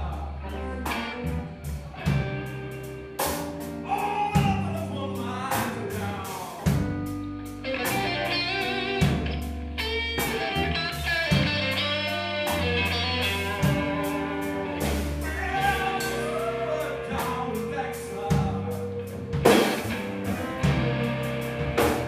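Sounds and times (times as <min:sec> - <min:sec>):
live blues band: 0:00.0 - 0:22.0
vibrato high guitar notes: 0:06.9 - 0:22.0
drum hits: 0:19.4 - 0:22.0.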